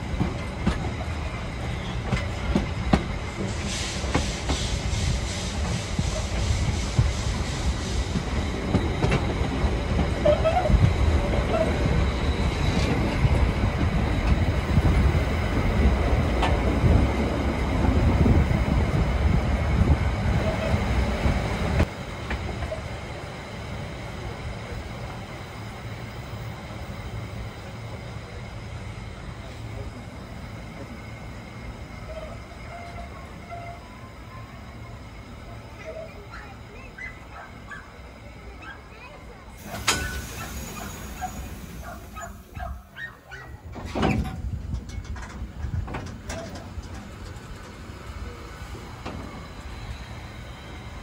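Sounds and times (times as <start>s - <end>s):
train rumbling on rails: 0.0s - 51.0s
wheels clicking over rail joints: 38.6s - 49.8s.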